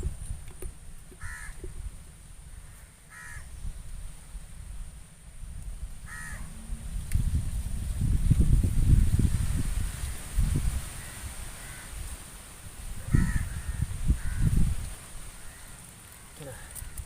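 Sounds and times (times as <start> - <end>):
crow cawing: 1.2 - 1.6, 2.5 - 3.5, 6.0 - 6.6, 11.0 - 12.0, 13.1 - 14.6, 15.4 - 17.0
low rumble: 5.4 - 9.7.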